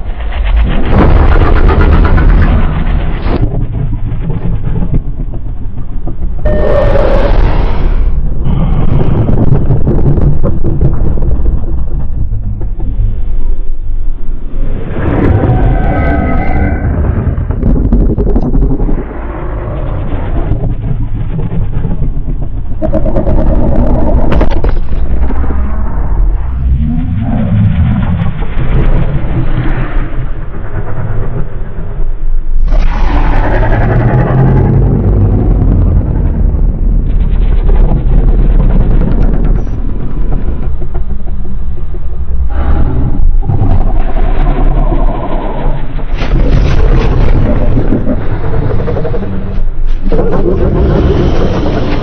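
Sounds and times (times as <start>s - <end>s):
rumbling monster roars: 0.0s - 5.0s, 6.4s - 11.6s, 14.5s - 40.9s, 42.3s - 52.0s
steady tone: 6.4s - 8.6s.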